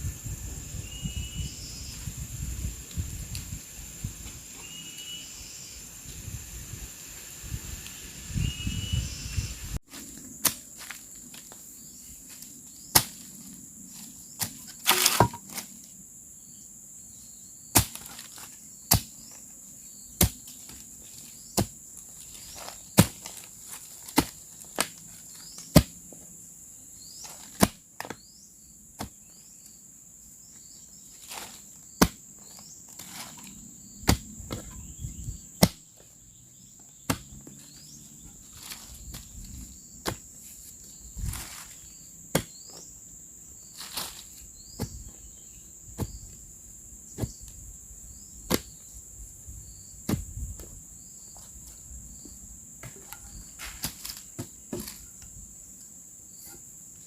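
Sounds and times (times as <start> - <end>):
insects droning: 0.0 - 57.0.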